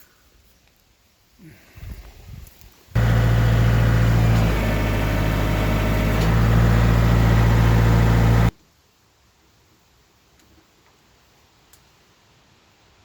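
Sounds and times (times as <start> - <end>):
tractor diesel engine running: 3.0 - 8.5.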